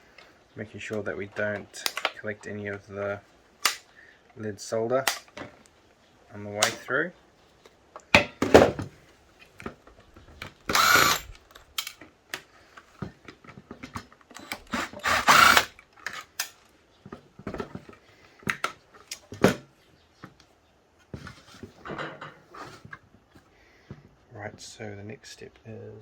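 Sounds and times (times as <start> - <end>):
wire cutters snipping wires: 5.0 - 5.4.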